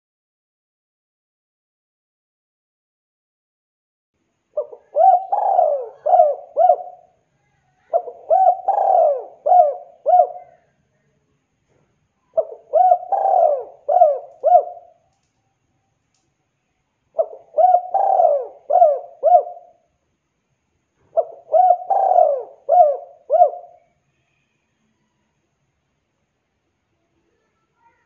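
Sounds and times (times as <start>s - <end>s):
dove cooing: 4.6s - 7.1s, 7.8s - 10.7s, 12.3s - 15.0s, 17.2s - 19.8s, 21.0s - 23.9s.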